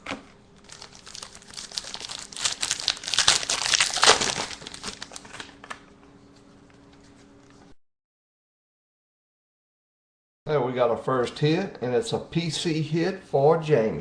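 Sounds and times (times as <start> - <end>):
foil wrapper crinkling and tearing: 0.0 - 5.8.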